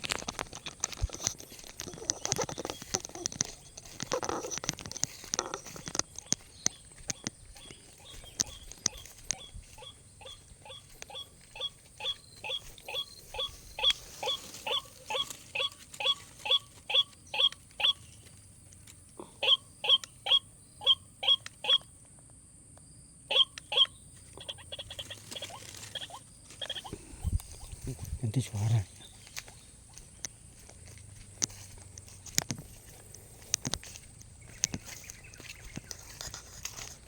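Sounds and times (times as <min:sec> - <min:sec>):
rustling: 0:00.0 - 0:16.9, 0:24.9 - 0:37.0
bird calling: 0:00.0 - 0:18.3, 0:19.2 - 0:21.9, 0:23.3 - 0:37.0.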